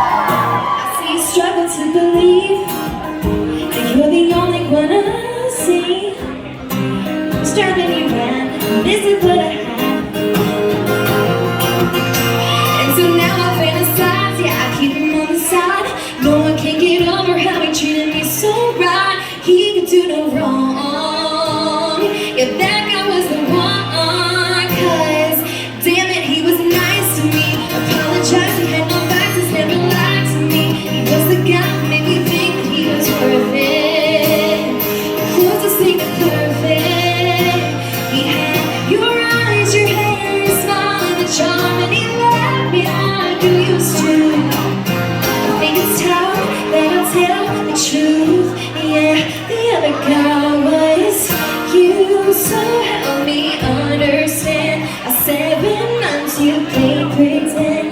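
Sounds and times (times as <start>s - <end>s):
woman singing: 0.0s - 11.4s, 12.0s - 57.9s
live band music: 2.2s - 5.0s, 5.7s - 15.0s, 26.9s - 47.8s.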